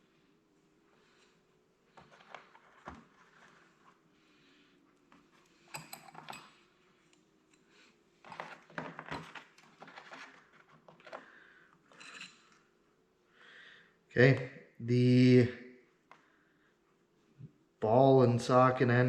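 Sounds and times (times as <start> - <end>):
metal parts and tools clinking: 5.7 - 6.6, 11.9 - 12.6.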